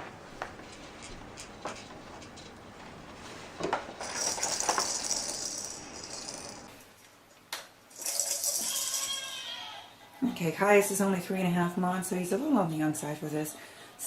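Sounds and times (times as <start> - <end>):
plastic baby toy rattling: 4.0 - 6.6, 8.0 - 9.2.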